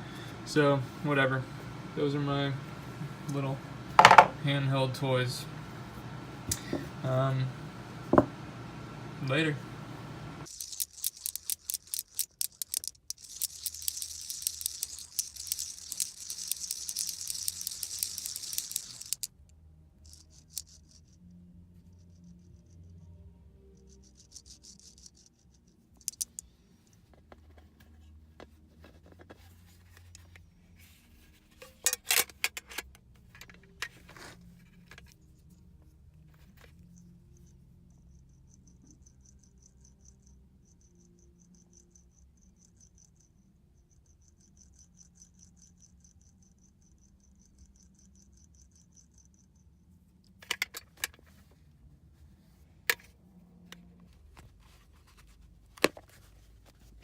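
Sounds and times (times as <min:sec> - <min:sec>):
metal fidget spinners clicking: 0:10.4 - 0:19.3, 0:20.0 - 0:21.2, 0:23.8 - 0:26.5, 0:31.6 - 0:34.0, 0:50.3 - 0:51.2.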